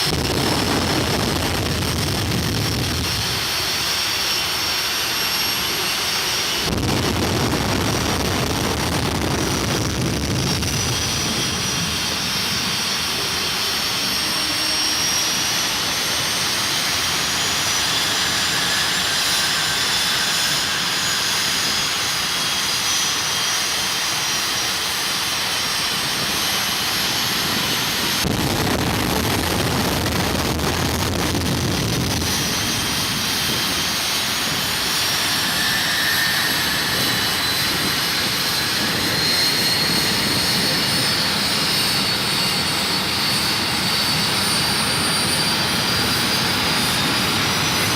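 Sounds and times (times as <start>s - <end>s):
deep rumble: 0.0s - 3.8s, 6.4s - 13.6s, 27.0s - 41.7s
jet engine with turbine whine: 0.0s - 47.9s.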